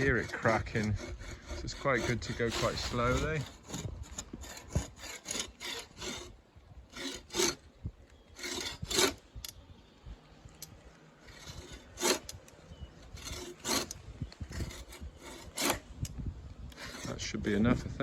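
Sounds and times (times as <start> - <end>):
hand saw rasping through wood: 0.0 - 7.6, 8.4 - 9.2, 11.3 - 12.3, 13.0 - 15.9, 16.7 - 17.4.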